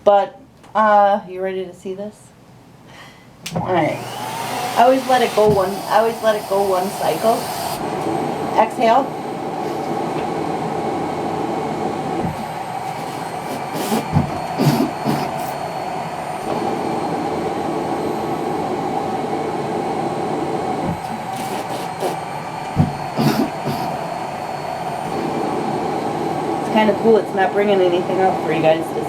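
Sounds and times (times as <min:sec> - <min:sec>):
cough assist machine blowing air: 0:03.9 - 0:08.8, 0:09.4 - 0:10.9, 0:11.9 - 0:18.0, 0:19.7 - 0:27.1
forced coughs: 0:13.8 - 0:15.5, 0:22.8 - 0:24.0.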